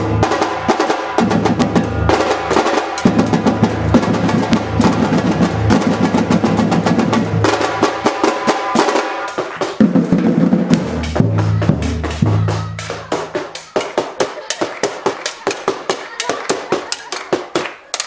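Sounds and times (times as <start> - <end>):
rapid snare drum strokes: 0.0 - 18.0
deep bass drums: 9.8 - 13.4.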